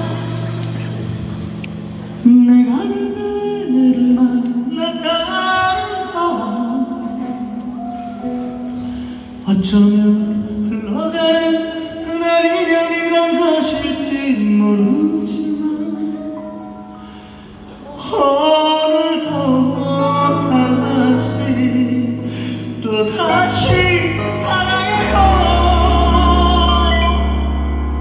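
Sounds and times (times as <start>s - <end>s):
person singing sustained notes: 0.0s - 1.5s, 17.8s - 28.0s
live band playing: 0.0s - 3.4s.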